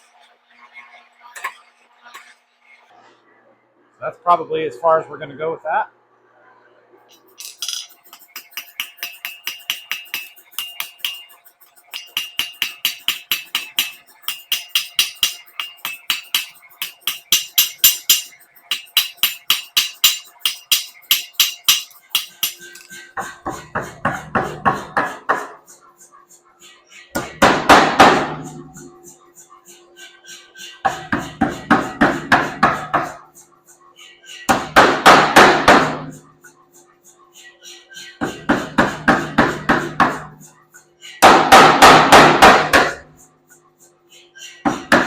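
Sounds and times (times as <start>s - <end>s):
hammer striking hot steel: 7.1s - 23.1s, 27.2s - 28.4s, 41.2s - 43.0s.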